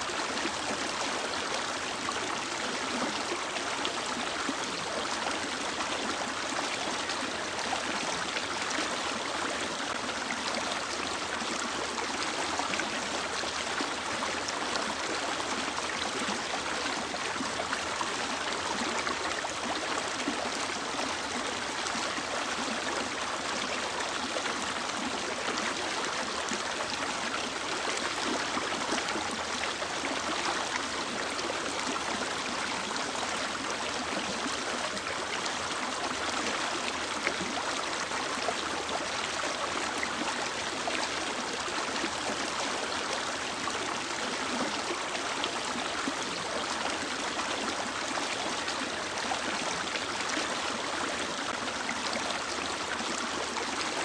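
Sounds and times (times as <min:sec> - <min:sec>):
stream flowing over rocks: 0:00.0 - 0:54.0.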